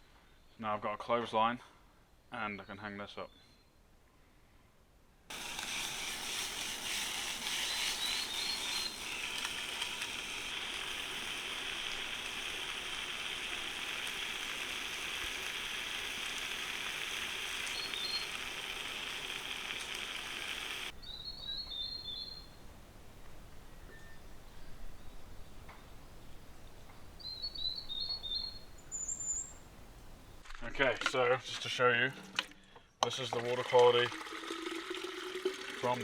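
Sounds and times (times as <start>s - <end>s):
outdoor rushing hiss: 5.3s - 21.0s
twittering bird calls: 7.4s - 15.5s, 16.9s - 22.6s, 27.2s - 30.4s
high bird chirps: 7.5s - 9.8s, 17.5s - 18.5s, 21.0s - 22.6s, 27.2s - 29.6s.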